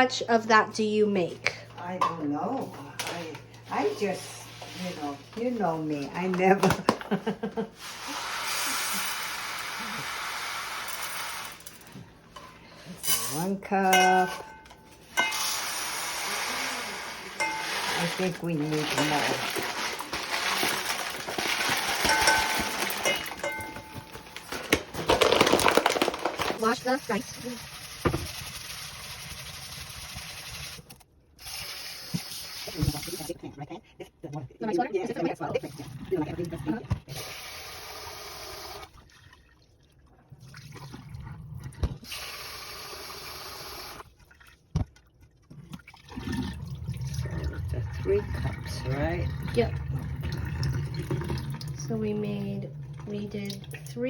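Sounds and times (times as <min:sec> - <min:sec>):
measuring cup clinking on pot: 0:17.4 - 0:18.0, 0:22.0 - 0:24.2
quiet water sounds: 0:38.8 - 0:42.0, 0:44.0 - 0:54.0.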